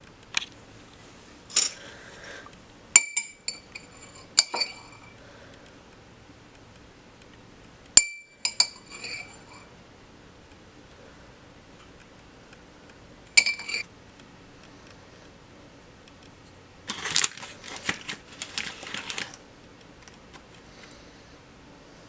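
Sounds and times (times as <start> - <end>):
dishes and glassware clinking: 1.5 - 1.8, 3.0 - 5.2, 8.0 - 9.7, 13.4 - 13.9.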